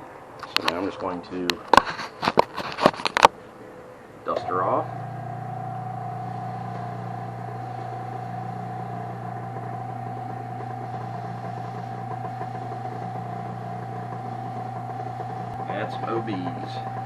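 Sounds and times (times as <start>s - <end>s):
wood lathe motor whining: 4.3s - 17.0s.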